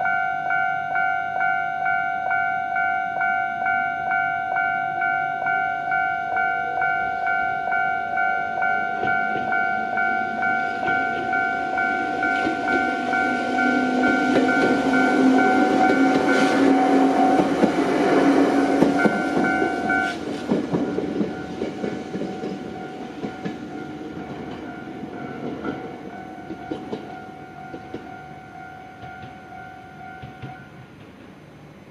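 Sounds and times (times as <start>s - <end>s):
level crossing warning bell: 0.0s - 30.8s
electric train passing: 0.0s - 31.9s
train wheels clicking over rail joints: 9.0s - 31.4s.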